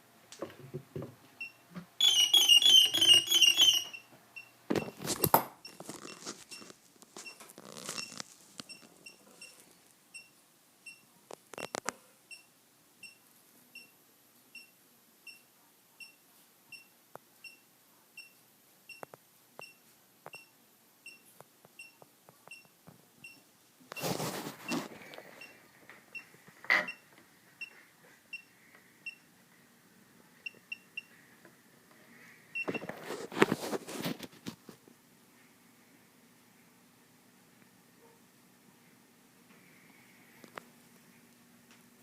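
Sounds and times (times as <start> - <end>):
short high beeps: 1.4 - 4.5.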